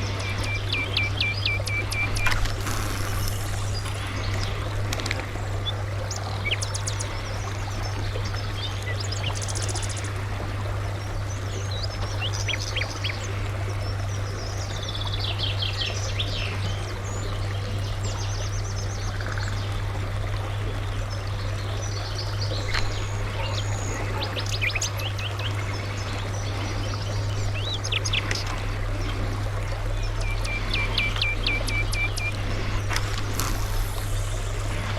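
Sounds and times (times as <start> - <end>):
birds chirping and trilling: 0.0 - 10.2, 10.9 - 19.8, 20.6 - 34.9
constant hiss: 0.0 - 10.6, 21.4 - 34.9
steady low hum: 0.0 - 34.9.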